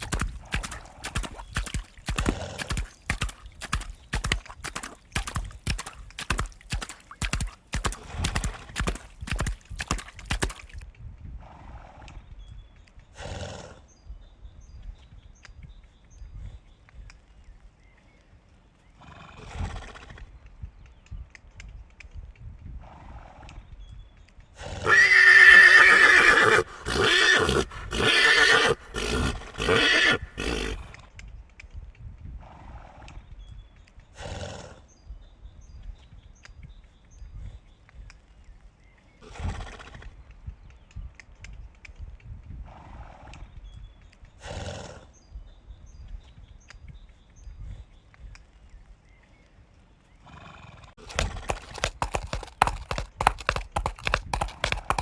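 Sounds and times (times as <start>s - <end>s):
faint short horse sounds: 0.0s - 10.8s, 24.6s - 31.0s, 50.2s - 55.0s
horse whinnying: 24.8s - 31.0s, 51.0s - 55.0s.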